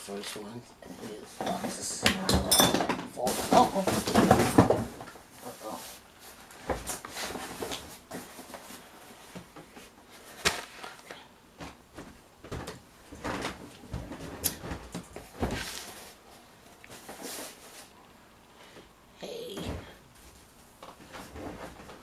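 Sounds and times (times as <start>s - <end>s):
objects handled and set down: 0.9s - 5.2s, 6.3s - 16.2s.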